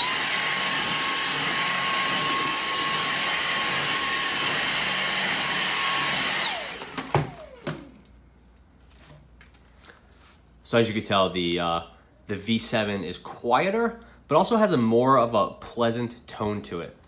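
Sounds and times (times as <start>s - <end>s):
motor winding down: 0.0s - 8.0s
stick vacuum whining: 0.0s - 8.2s.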